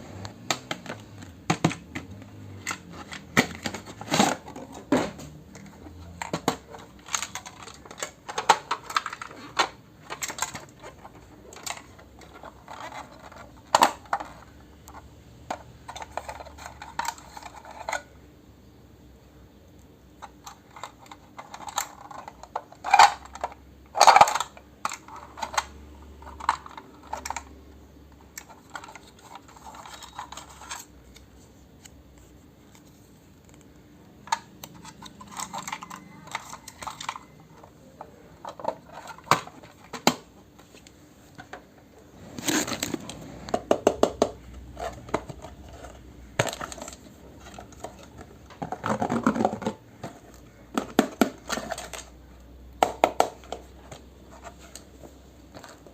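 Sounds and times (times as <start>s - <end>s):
toy kitchenware clicks and clinks: 5.5s - 18.1s, 20.2s - 27.6s, 28.3s - 31.0s, 34.2s - 40.2s.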